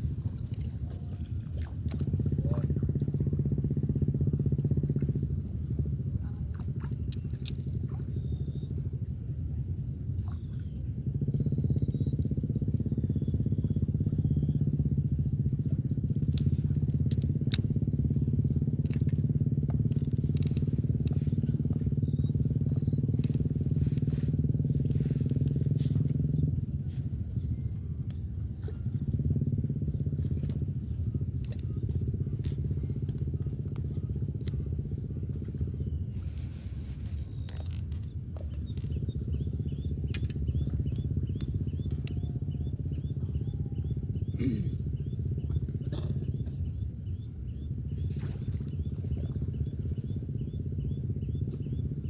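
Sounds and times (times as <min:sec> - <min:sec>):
motor engine running: 0:00.0 - 0:52.0
faint bird chirps: 0:30.8 - 0:52.0.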